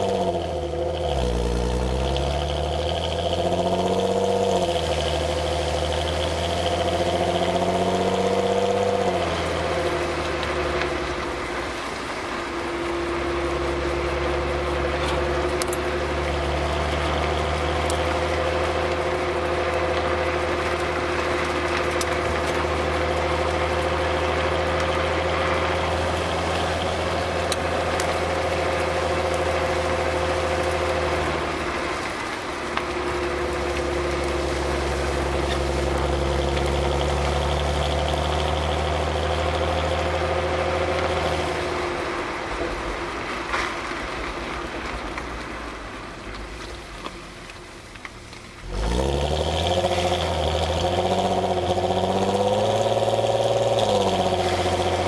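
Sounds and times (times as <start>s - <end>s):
car exhaust engine revving: 0.0s - 43.2s, 48.6s - 55.0s.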